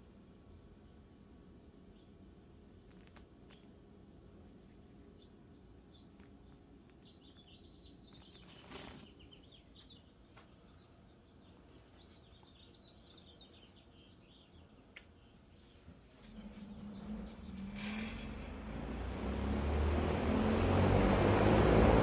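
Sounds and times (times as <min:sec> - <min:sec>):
low steady hum: 0:00.0 - 0:22.0
small birds twittering: 0:05.0 - 0:19.8.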